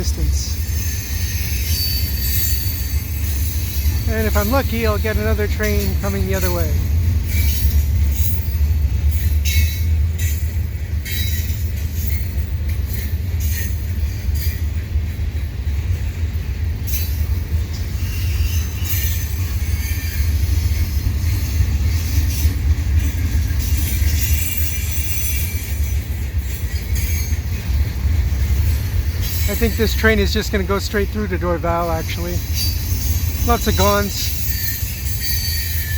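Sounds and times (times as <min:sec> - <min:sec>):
high wheel squeal: 0:00.0 - 0:05.2, 0:17.7 - 0:35.9
freight train wheels rumbling: 0:00.0 - 0:35.9.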